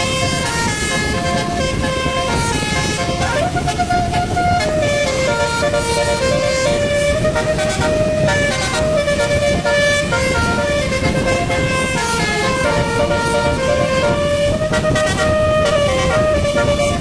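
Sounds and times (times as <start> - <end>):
multi-tone bus horn melody: 0.0 - 17.0.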